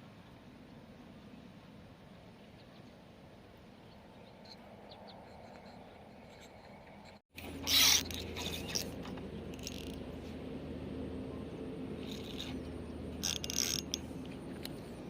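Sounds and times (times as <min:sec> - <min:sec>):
fishing reel whirring: 0:07.4 - 0:10.2, 0:12.0 - 0:15.0.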